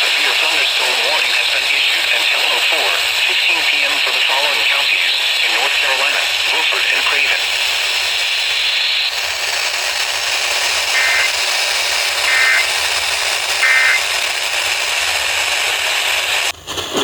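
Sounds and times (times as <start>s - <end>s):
radio hiss: 0.0s - 17.0s
digital data tone bursts: 6.1s - 15.3s.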